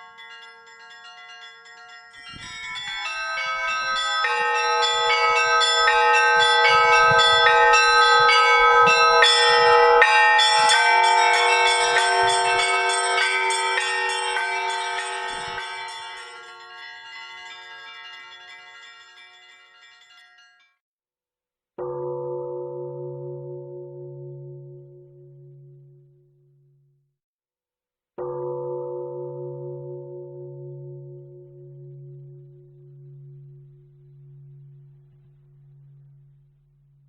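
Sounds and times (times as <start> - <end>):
bells ringing in a peal: 0.0 - 20.8, 28.2 - 33.7.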